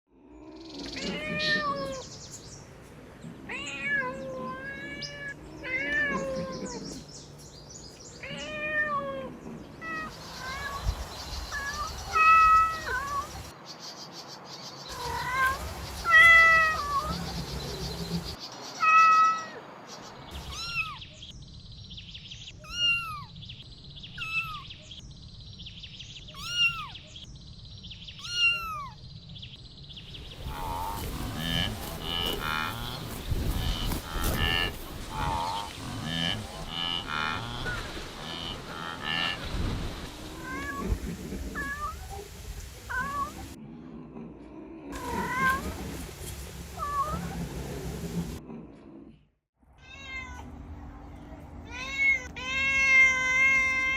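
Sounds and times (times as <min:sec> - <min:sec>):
kittens meowing: 0:08.2 - 0:13.4, 0:14.9 - 0:17.3, 0:20.4 - 0:21.0, 0:22.6 - 0:23.3, 0:24.2 - 0:24.7, 0:26.3 - 0:27.0, 0:28.2 - 0:29.0.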